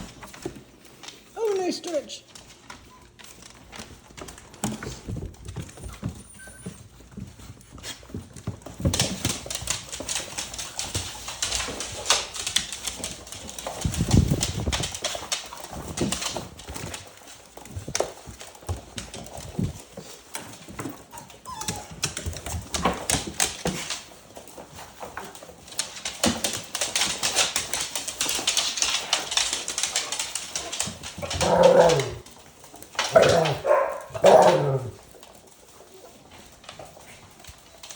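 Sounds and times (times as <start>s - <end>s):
puppy claws clicking on hard floor: 0.0s - 37.9s
puppy whines and yips: 5.7s - 6.9s, 21.1s - 22.0s.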